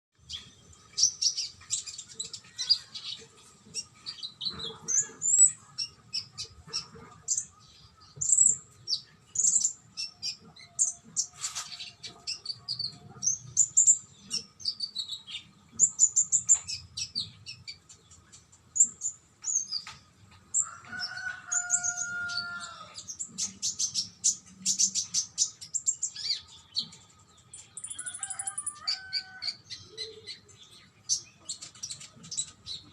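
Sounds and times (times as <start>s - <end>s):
songbird chirps and trills: 0.1s - 32.9s.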